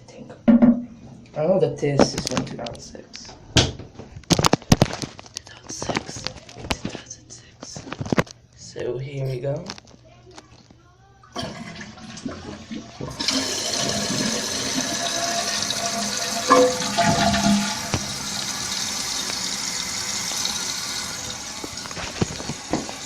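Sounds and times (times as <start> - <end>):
toilet flush water rushing: 11.4 - 23.0
faint toilet clicks: 16.4 - 19.6.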